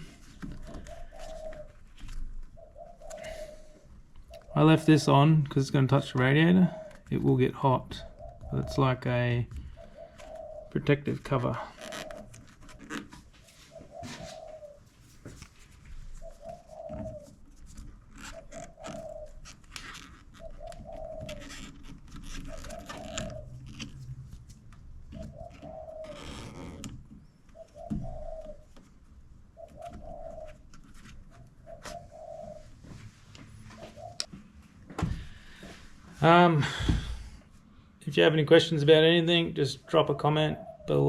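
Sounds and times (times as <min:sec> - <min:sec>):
dove cooing: 0:00.0 - 0:15.3, 0:15.9 - 0:37.4, 0:39.8 - 0:41.0.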